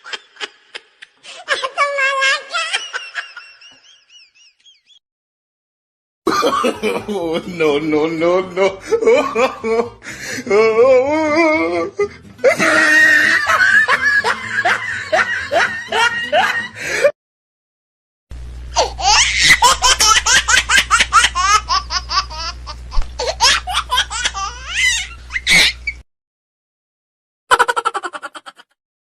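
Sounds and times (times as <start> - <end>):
rhythmic laugh: 0.0 - 1.7, 2.5 - 5.0, 6.3 - 17.1, 18.8 - 26.0, 27.5 - 28.8
fast high-pitched laugh with shriek: 0.0 - 5.0, 12.4 - 16.7, 18.8 - 22.6, 23.2 - 26.0, 27.5 - 28.8.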